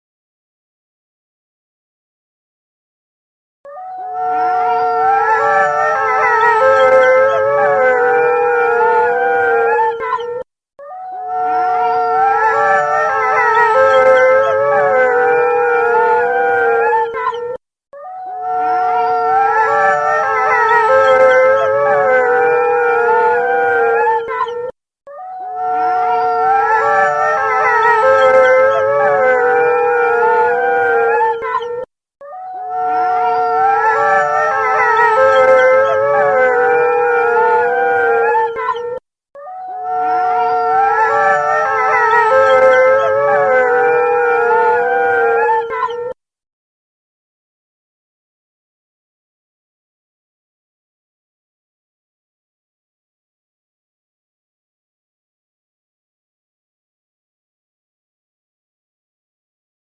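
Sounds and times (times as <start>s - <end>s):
wolves howling in chorus: 3.7s - 10.1s, 11.0s - 17.2s, 18.1s - 24.3s, 25.2s - 31.4s, 32.4s - 38.6s, 39.4s - 45.8s.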